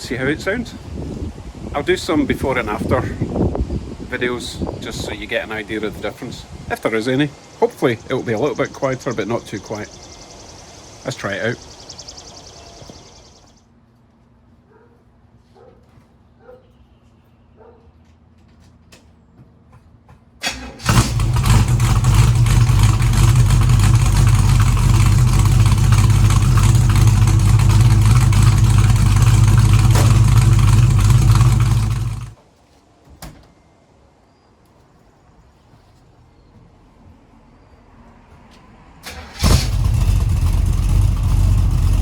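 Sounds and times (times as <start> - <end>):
engine cranking and idling: 20.4 - 32.4, 39.0 - 42.0.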